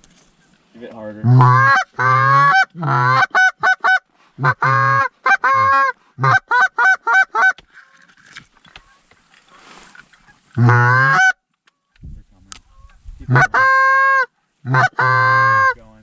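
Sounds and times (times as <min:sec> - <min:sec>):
goose call honks: 0:01.2 - 0:07.6, 0:10.6 - 0:11.4, 0:13.3 - 0:15.9
goose call clucks: 0:01.3 - 0:07.6, 0:09.8 - 0:11.4, 0:12.6 - 0:15.9.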